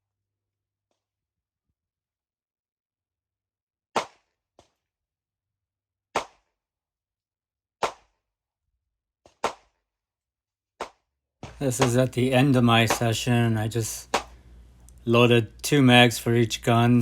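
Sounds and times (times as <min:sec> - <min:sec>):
fainter sharper gunshot reports: 0:11.5 - 0:17.0.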